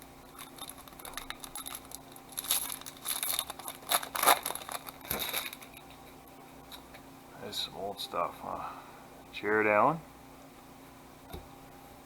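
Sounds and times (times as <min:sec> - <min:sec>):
card pack wrapper tearing and crinkling: 0:00.6 - 0:05.7.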